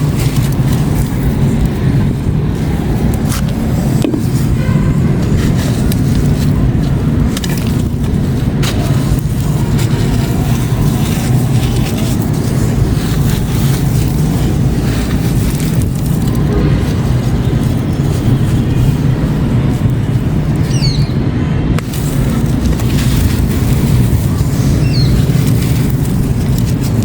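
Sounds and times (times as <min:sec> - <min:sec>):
sharp crackles: 0:00.0 - 0:27.0
steady low rumble: 0:00.0 - 0:27.0.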